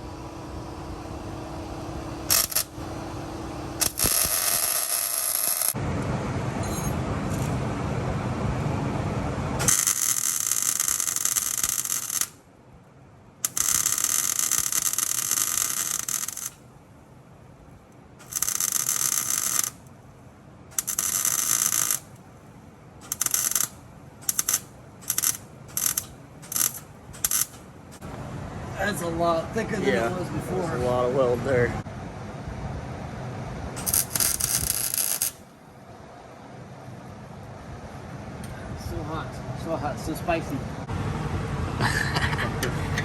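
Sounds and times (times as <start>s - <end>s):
steady noise: 0.0s - 41.8s
electric welder arc crackling: 0.1s - 5.8s, 9.6s - 12.4s, 13.4s - 16.7s, 18.2s - 19.9s, 20.7s - 22.3s, 23.0s - 28.0s, 33.8s - 35.6s.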